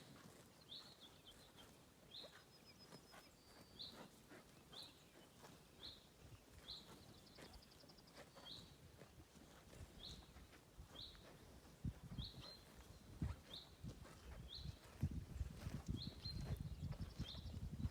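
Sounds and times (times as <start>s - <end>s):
cows tearing and chewing grass: 0.0s - 17.9s
bird chirping: 0.2s - 11.5s, 15.6s - 17.6s.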